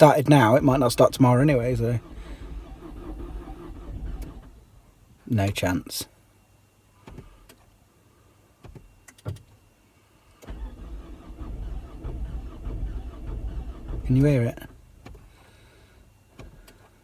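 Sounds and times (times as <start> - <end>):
starter motor cranking engine: 0.5 - 4.8, 10.4 - 14.8.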